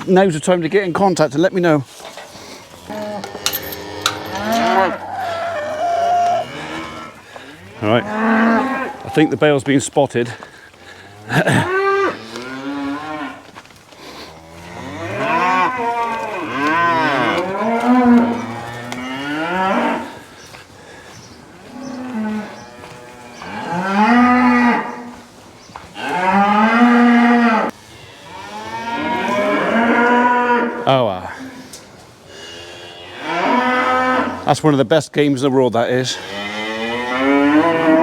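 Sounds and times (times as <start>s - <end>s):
cattle mooing: 2.8s - 9.5s, 11.0s - 13.5s, 14.1s - 20.2s, 21.7s - 25.2s, 26.0s - 31.6s, 32.4s - 34.5s, 36.1s - 38.0s.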